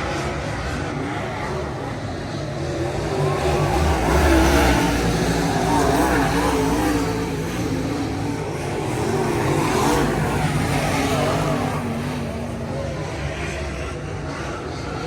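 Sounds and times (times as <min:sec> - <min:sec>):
race car engines: 0:00.0 - 0:15.0.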